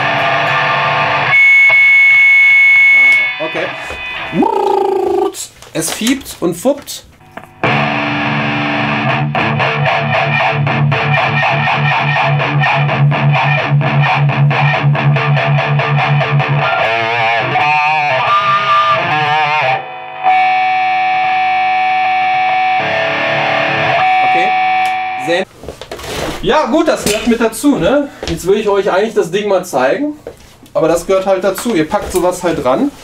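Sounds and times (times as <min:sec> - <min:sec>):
guitar rig squealing: 0:00.0 - 0:05.3, 0:07.2 - 0:25.4
distorted electric guitar with wah: 0:00.0 - 0:05.4, 0:07.2 - 0:25.4.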